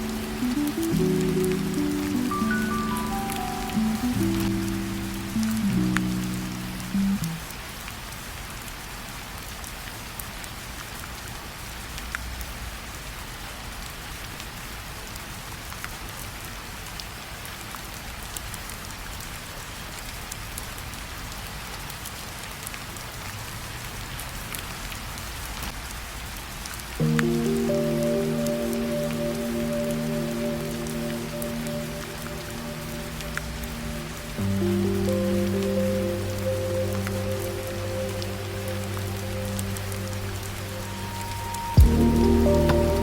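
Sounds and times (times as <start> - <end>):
music: 0.0 - 7.4, 27.0 - 43.0
soft rain falling: 0.0 - 43.0.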